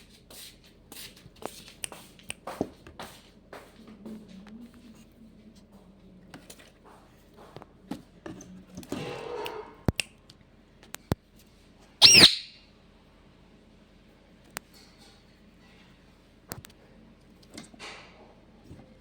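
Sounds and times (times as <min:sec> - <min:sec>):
parrot squawking: 0:12.0 - 0:12.6.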